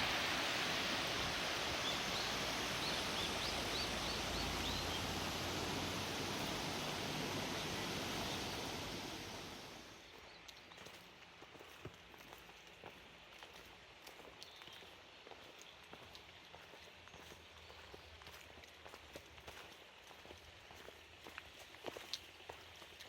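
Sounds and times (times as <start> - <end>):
water rushing: 0.0 - 10.1
bird chirping faintly: 1.8 - 10.8.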